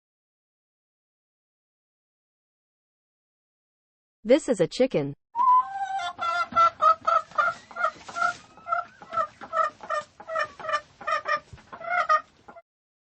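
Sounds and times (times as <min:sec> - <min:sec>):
chicken clucking: 0:05.4 - 0:12.6.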